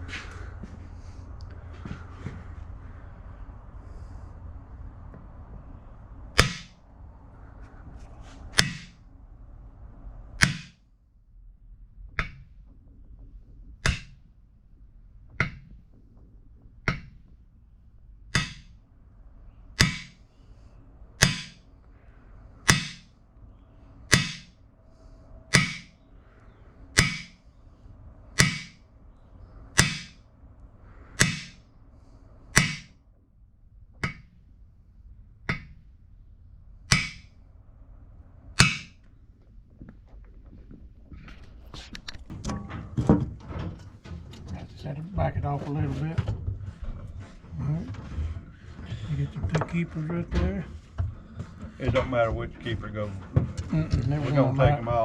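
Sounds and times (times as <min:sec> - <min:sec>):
hammer blows on steel driver: 0:06.4 - 0:06.8, 0:24.0 - 0:26.0, 0:26.9 - 0:27.4, 0:28.4 - 0:28.8, 0:29.7 - 0:30.2, 0:31.1 - 0:31.6.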